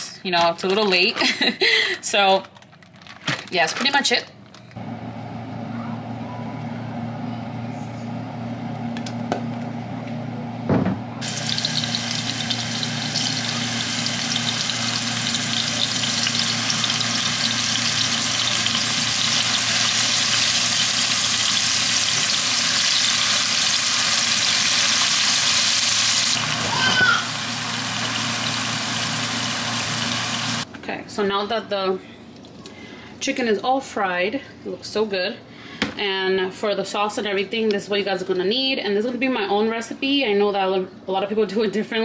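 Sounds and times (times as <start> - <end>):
chicken sizzling in oil: 11.2 - 30.7.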